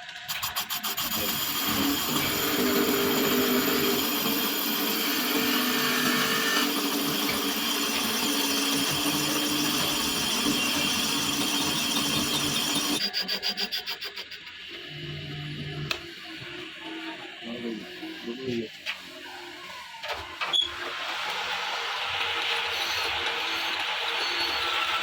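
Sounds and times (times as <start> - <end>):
power tool running: 0.2 - 13.5.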